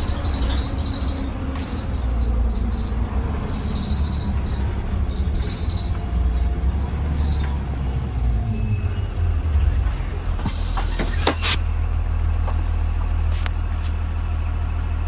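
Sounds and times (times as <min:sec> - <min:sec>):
bus engine and road rumble: 0:00.0 - 0:15.0
high-pitched squeaks: 0:07.2 - 0:12.4.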